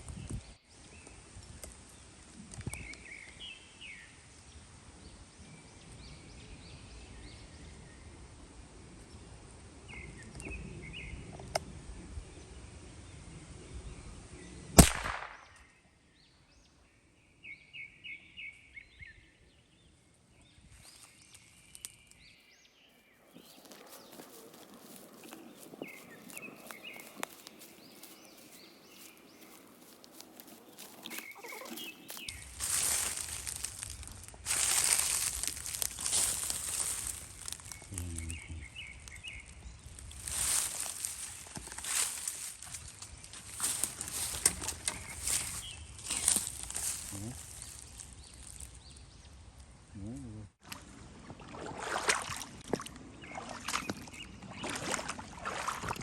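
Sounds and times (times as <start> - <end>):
rifle shot: 14.8 - 15.5
birds chirping: 15.4 - 50.5, 52.7 - 56.0.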